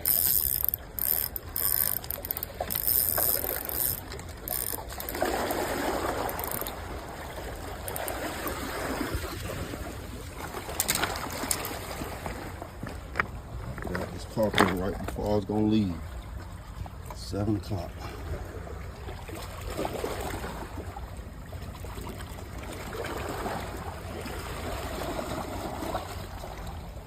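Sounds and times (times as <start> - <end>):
fishing reel ratcheting: 0.0 - 6.8, 7.8 - 8.6
water sloshing and splashing: 0.0 - 27.0.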